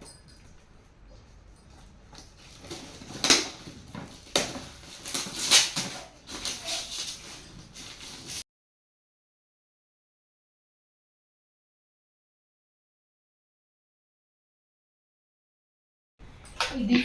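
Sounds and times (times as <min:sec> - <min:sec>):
wrapping paper tearing and crinkling: 0:02.4 - 0:08.4.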